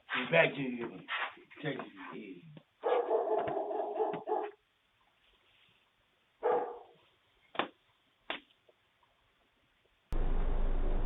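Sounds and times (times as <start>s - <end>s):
dog barking: 2.8s - 4.6s, 6.4s - 7.0s.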